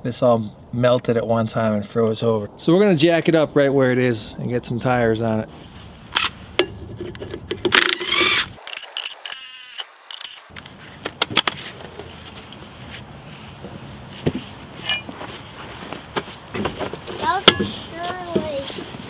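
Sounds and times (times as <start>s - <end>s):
metal knocks clinks and scrapes: 14.3s - 15.8s.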